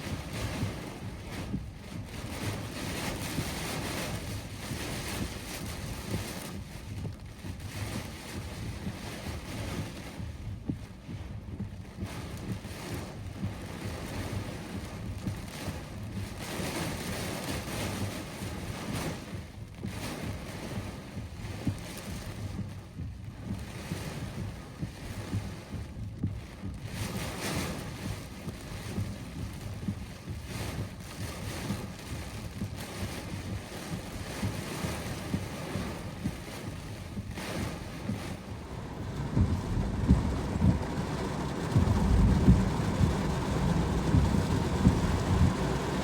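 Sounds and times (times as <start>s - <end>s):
wind buffeting microphone: 35.3s - 46.0s
heavy rain: 37.5s - 46.0s
strong gusting wind: 38.1s - 46.0s.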